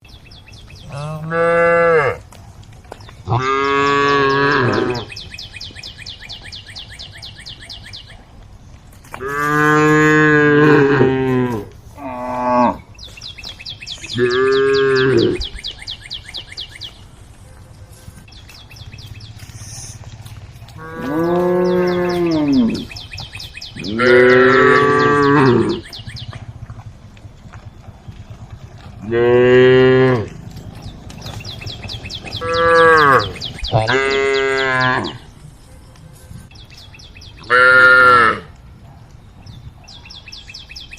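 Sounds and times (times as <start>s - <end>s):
cows mooing: 0.8s - 2.3s, 3.2s - 5.2s, 9.2s - 12.9s, 14.0s - 15.6s, 20.7s - 26.9s, 27.6s - 35.3s, 37.4s - 38.5s.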